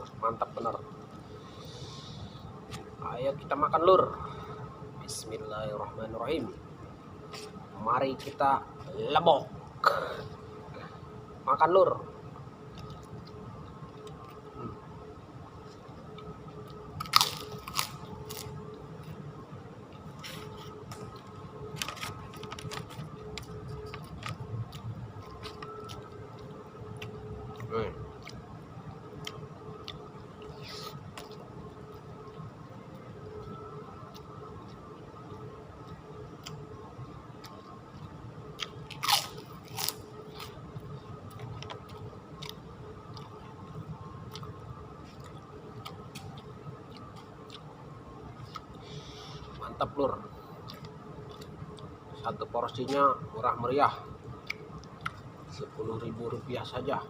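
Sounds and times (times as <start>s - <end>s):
faint steady hum: 0.0s - 57.0s
faint steady tone: 0.0s - 57.0s
crunchy chewing and biting: 15.6s - 19.2s, 19.9s - 53.2s
loud food crunches: 17.0s - 18.6s, 38.6s - 40.6s
close-up chewing: 37.4s - 49.6s, 50.4s - 52.0s.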